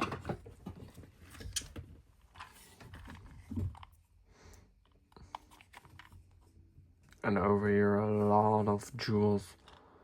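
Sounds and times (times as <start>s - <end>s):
handling small boxes and parts: 0.0s - 7.5s.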